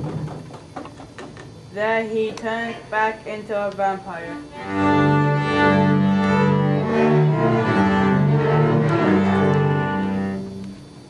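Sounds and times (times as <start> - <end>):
orchestra playing long low notes: 4.4 - 11.0.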